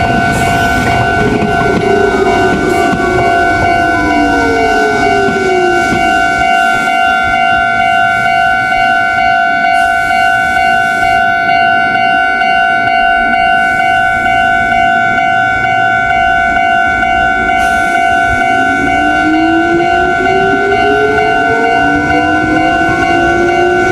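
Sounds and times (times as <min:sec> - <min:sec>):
train motor whine: 0:00.0 - 0:11.4, 0:15.4 - 0:23.9
level-crossing alarm ringing: 0:00.0 - 0:23.9.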